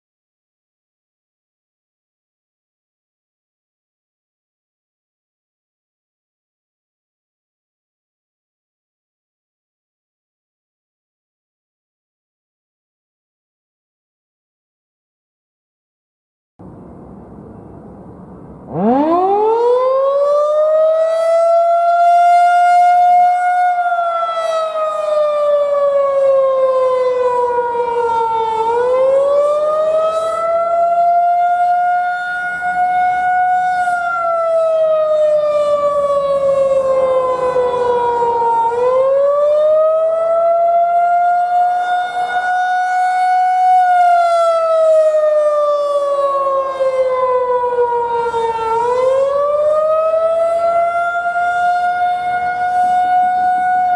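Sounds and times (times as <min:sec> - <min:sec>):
rotating warning siren wailing: 0:18.3 - 0:53.9.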